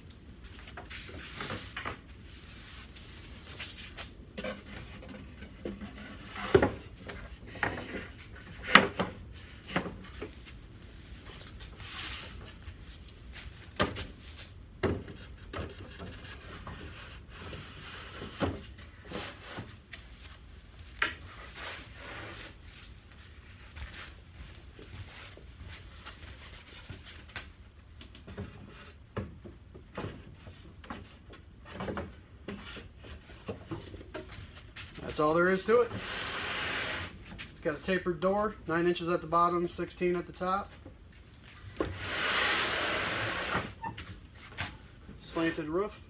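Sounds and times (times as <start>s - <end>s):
wooden knocks and clunks: 14.8s - 16.8s.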